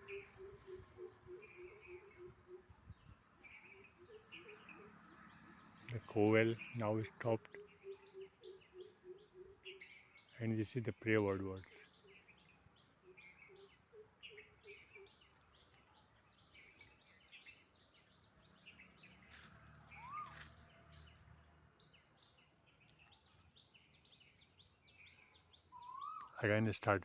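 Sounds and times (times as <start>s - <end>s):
short high bird chirps: 19.9s - 20.7s.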